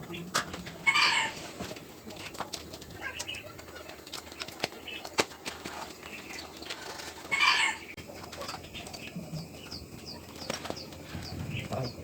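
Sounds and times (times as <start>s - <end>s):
bird squawk: 0.8s - 1.4s, 7.3s - 8.0s.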